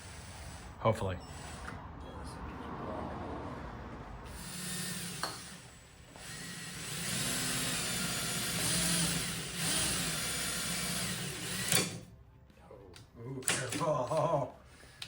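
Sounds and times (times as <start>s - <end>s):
electric drill drilling: 4.3s - 12.0s.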